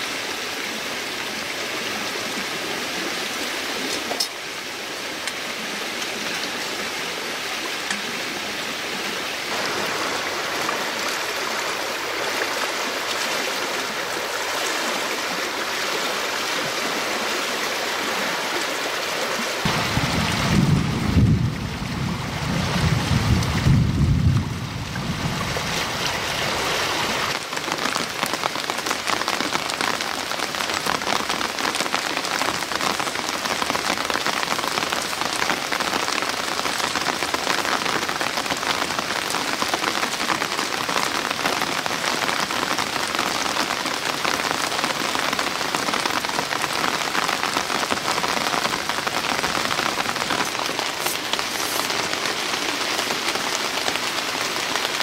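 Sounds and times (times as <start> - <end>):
steady rain falling: 0.0 - 55.0
low rumble: 19.7 - 25.7.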